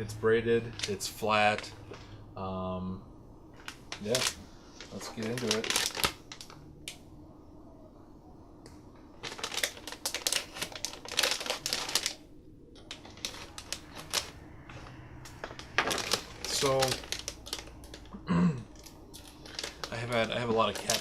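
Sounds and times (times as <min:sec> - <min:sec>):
packaging crackling and rustling: 0:00.7 - 0:02.1, 0:03.5 - 0:06.7, 0:09.1 - 0:12.2, 0:12.8 - 0:21.0.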